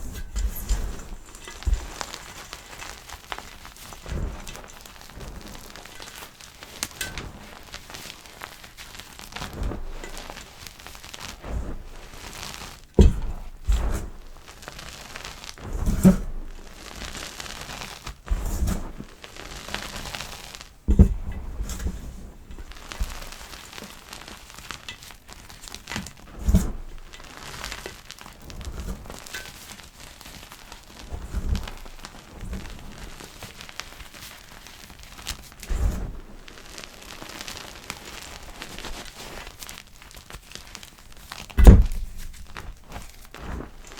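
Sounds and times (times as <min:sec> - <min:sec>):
chalk crackling and crumbling: 0:00.0 - 0:43.9
dull thump: 0:13.0 - 0:14.2, 0:20.9 - 0:21.8, 0:41.6 - 0:43.8.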